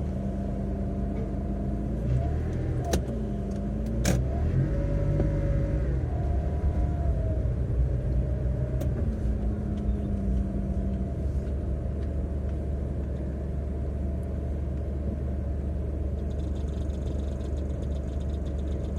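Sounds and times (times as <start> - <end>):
car engine and road rumble: 0.0 - 18.9
faint rapid ticking: 16.2 - 18.9.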